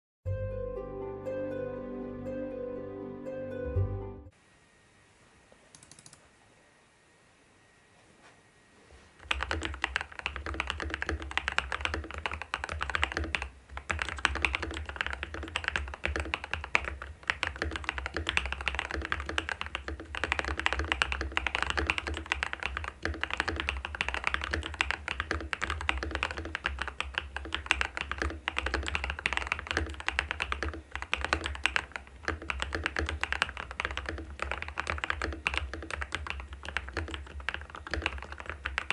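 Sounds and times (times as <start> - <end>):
fast typing on mechanical keyboard: 5.8 - 6.2, 9.2 - 38.9.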